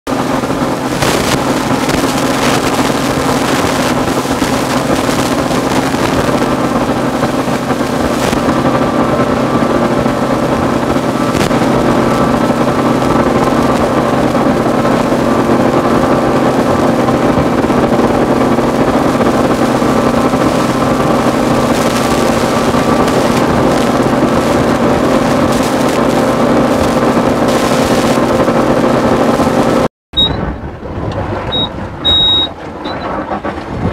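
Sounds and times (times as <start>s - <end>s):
motorboat engine droning: 0.1s - 33.9s
wind and water rushing: 0.1s - 33.9s.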